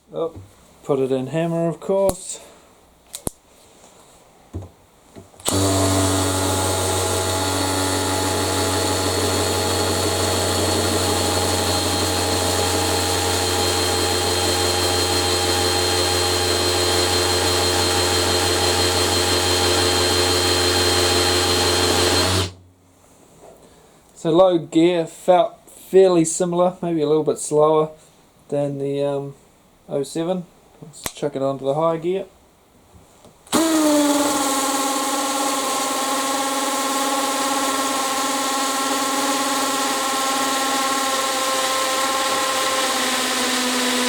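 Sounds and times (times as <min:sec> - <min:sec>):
hammer drill boring into block: 0:05.4 - 0:22.6, 0:33.5 - 0:44.0.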